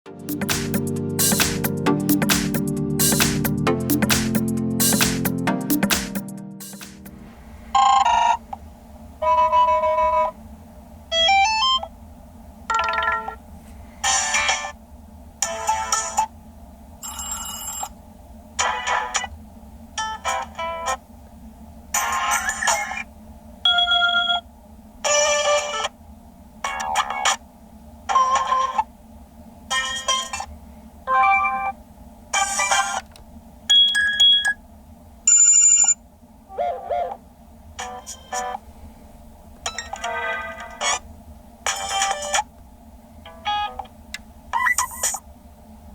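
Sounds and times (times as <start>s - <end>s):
steady electronic ringtone: 7.8s - 8.4s, 9.2s - 10.4s, 12.7s - 13.4s, 17.0s - 17.9s, 23.7s - 24.4s, 29.7s - 30.5s, 31.1s - 31.8s, 35.3s - 36.0s
busy chiming ringtone: 17.0s - 17.9s, 23.7s - 24.4s.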